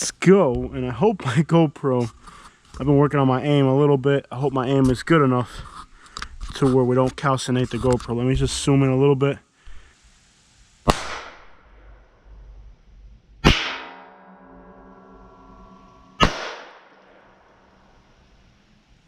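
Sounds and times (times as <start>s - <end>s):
pistol shots: 10.9s - 11.6s, 13.4s - 14.2s, 16.2s - 17.0s.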